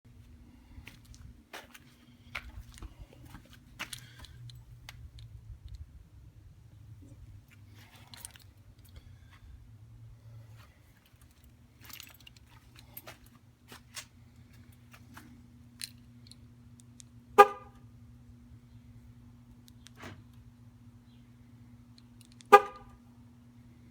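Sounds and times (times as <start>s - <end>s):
light clicks and rattles: 0.8s - 5.9s, 7.1s - 9.5s, 10.6s - 17.1s
car horn chirp: 17.4s - 17.8s, 22.5s - 23.0s.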